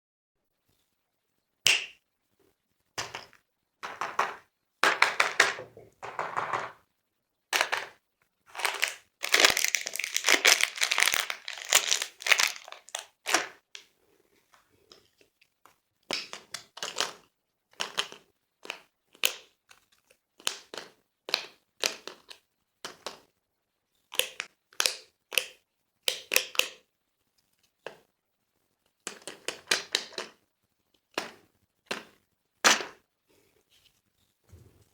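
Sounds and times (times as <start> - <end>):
candy wrappers crinkling and tearing: 8.5 - 13.6.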